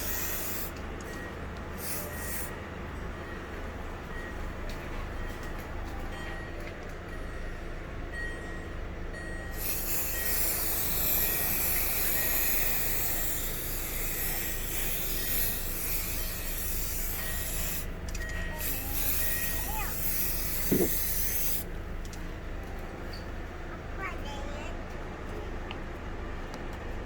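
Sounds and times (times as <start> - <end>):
loud hiss: 9.6 - 17.9, 18.7 - 21.6.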